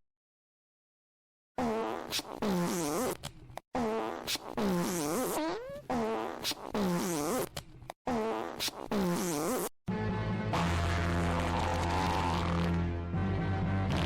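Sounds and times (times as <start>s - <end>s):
pitched fart sound effects: 1.6s - 3.2s, 3.8s - 7.5s, 8.1s - 9.7s, 10.5s - 13.0s.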